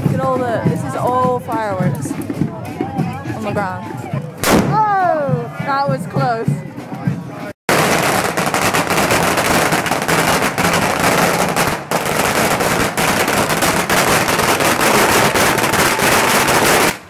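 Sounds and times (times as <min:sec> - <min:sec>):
firecrackers cracking: 0:04.4 - 0:04.8, 0:07.7 - 0:17.0.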